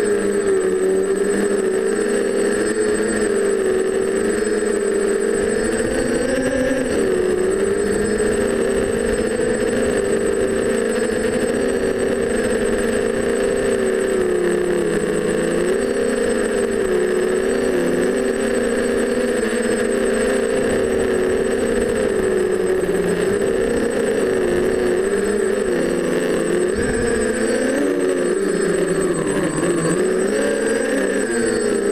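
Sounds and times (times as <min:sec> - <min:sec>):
quadcopter motors whining: 0:00.0 - 0:31.9.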